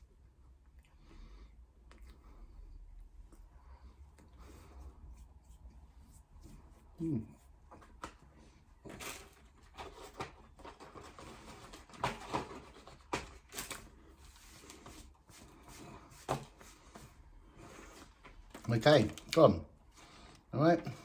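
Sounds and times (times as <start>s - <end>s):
man chewing and eating: 0.1s - 8.0s.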